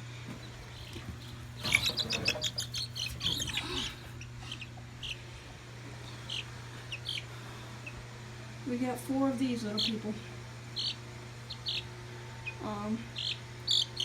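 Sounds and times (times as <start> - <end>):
steady low hum: 0.0 - 14.0
chickens chirping and peeping: 0.3 - 8.1, 10.6 - 14.0.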